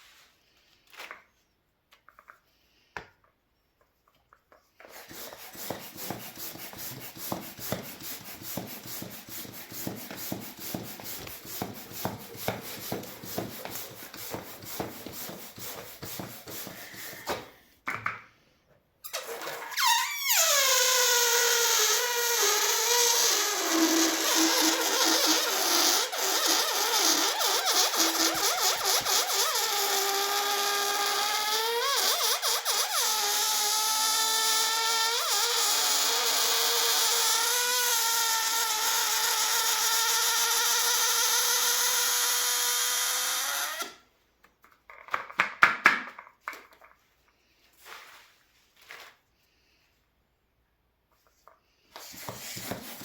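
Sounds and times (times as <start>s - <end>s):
balloon deflating with a squeal: 4.8s - 17.5s, 19.0s - 44.0s
short rubbery squeaks: 19.0s - 44.0s.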